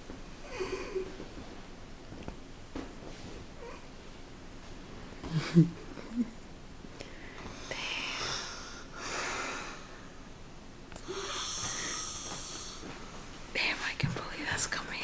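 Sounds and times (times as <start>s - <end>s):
woman snoring: 7.5s - 9.9s, 11.0s - 12.8s.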